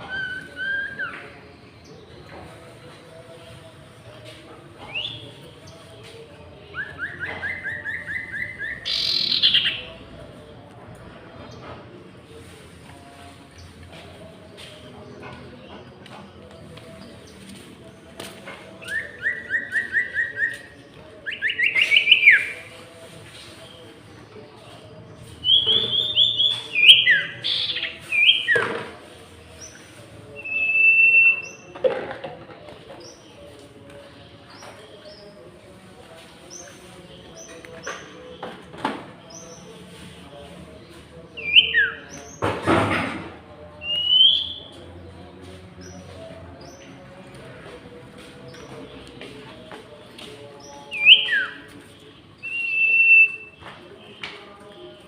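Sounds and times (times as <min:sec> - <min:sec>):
songbirds whistling: 0:00.0 - 0:02.2, 0:06.7 - 0:09.9, 0:18.8 - 0:22.7, 0:25.3 - 0:28.6, 0:29.6 - 0:31.7, 0:41.3 - 0:42.4, 0:43.8 - 0:44.8, 0:50.6 - 0:54.4
bird harsh rasping call: 0:07.0 - 0:09.8.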